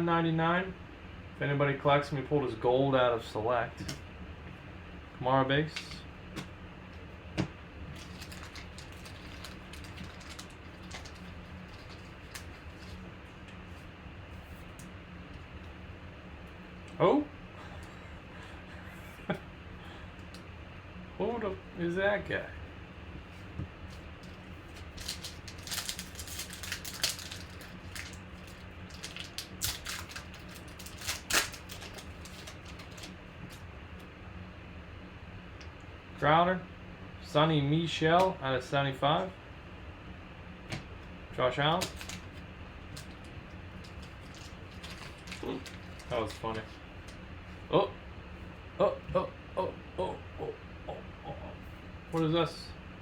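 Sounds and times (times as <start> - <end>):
low steady hum: 0.0 - 53.0
cards clicking and rustling: 8.0 - 13.6, 23.9 - 33.6, 41.7 - 47.2
cards rustling and sliding: 41.7 - 47.2.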